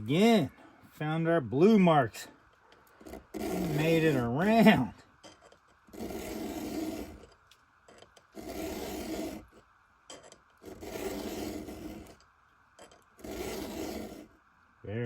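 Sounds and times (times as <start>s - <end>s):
round file rasping on chainsaw chain: 3.0s - 7.4s, 8.4s - 12.2s, 12.8s - 14.3s.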